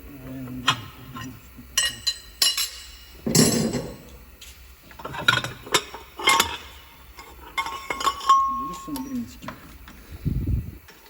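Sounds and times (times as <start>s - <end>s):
metal engine parts clinking: 0.7s - 4.2s, 5.0s - 9.2s
heavy metallic clunk: 3.2s - 4.2s.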